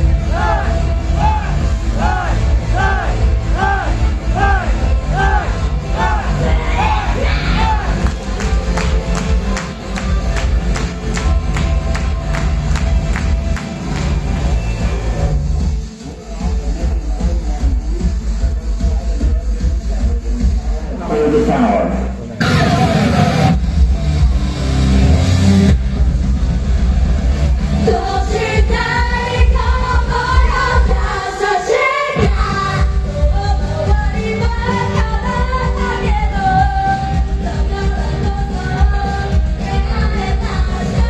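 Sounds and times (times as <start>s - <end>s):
pulsing bass beat: 0.0s - 31.2s
loud electronic music: 0.0s - 41.0s
woman singing: 27.8s - 41.0s.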